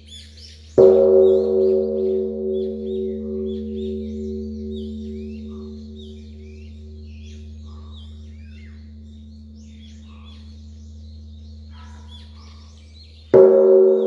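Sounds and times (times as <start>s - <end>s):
birds chirping: 0.0s - 14.0s
large bell humming: 0.0s - 14.0s
bell struck with loud clang: 0.8s - 12.8s, 13.4s - 14.0s.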